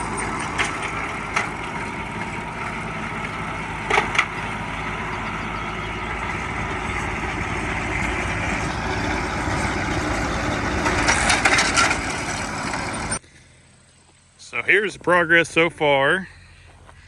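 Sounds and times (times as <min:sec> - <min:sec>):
rattles: 0:00.0 - 0:05.3, 0:06.2 - 0:13.2
tractor engine running: 0:00.0 - 0:17.0
sharp clatters: 0:10.8 - 0:13.1.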